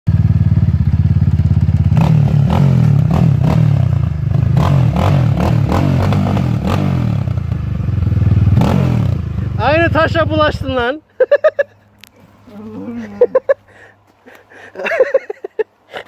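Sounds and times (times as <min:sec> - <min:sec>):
atv engine running: 0:00.1 - 0:10.9.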